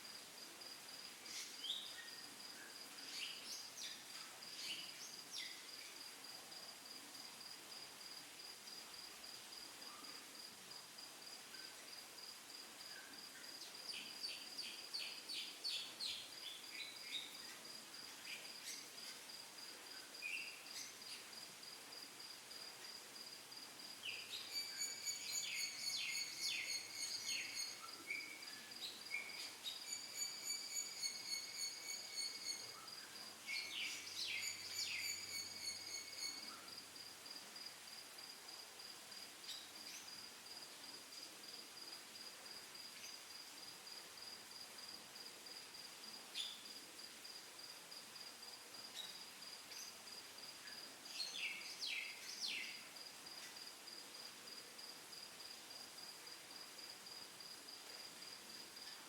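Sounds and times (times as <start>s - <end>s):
lower pulsing insect chirp: 0.0s - 59.0s
insects trilling: 23.2s - 55.6s.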